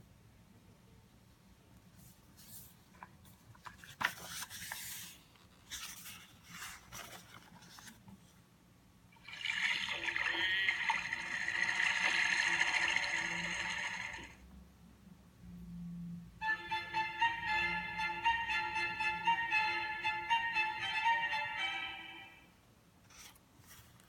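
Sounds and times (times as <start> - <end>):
paper and board rustling: 1.9 - 8.4, 23.1 - 24.0
violin music from sound module: 16.4 - 22.4.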